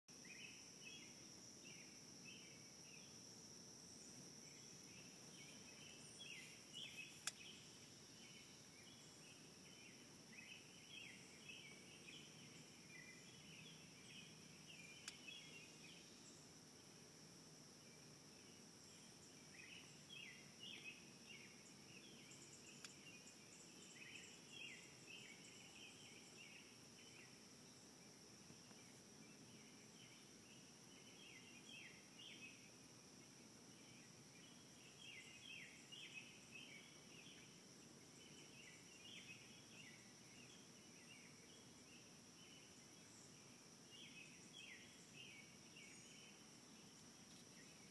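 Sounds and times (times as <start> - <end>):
insects droning: 0.1 - 47.9
birds chirping: 3.8 - 16.5.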